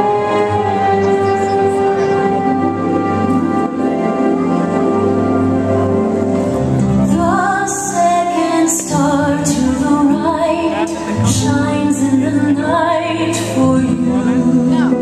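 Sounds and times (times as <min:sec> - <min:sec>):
orchestral music: 0:00.0 - 0:15.0
woman singing slow melody: 0:07.1 - 0:15.0.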